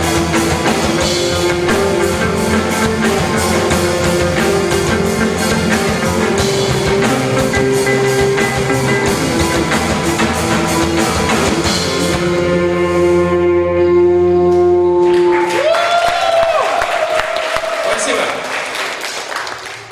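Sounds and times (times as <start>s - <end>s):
electric guitar chord ringing: 0.0s - 15.6s
gliding tone: 0.0s - 15.6s
drums: 0.0s - 17.8s.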